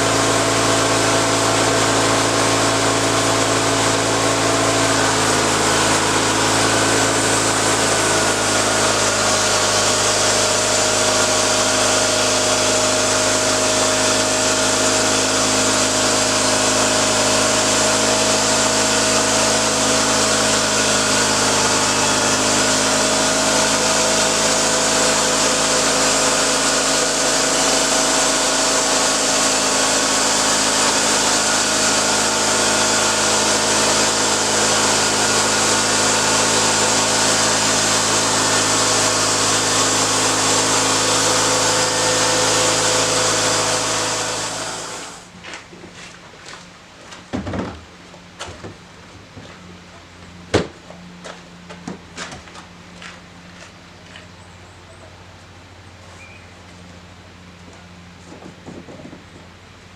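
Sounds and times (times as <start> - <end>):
saw cutting wood: 0.0 - 45.3
small petrol engine running: 0.0 - 45.3.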